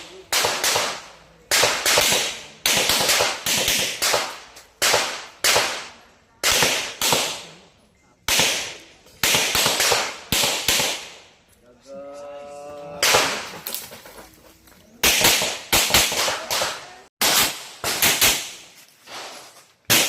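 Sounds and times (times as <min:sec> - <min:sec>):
gunshots with echo: 0:00.0 - 0:07.5, 0:13.0 - 0:13.6.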